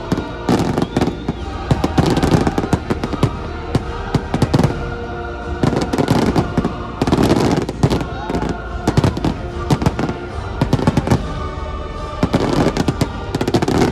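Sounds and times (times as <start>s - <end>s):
fireworks bangs: 0.0s - 11.4s, 12.2s - 13.9s
loud show music over speakers: 0.0s - 13.9s.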